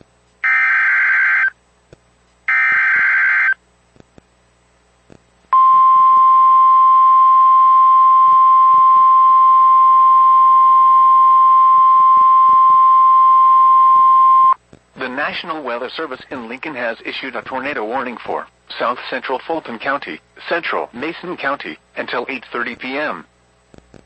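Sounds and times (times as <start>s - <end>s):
steady warning alarm tone: 0.4s - 1.6s, 2.5s - 3.6s.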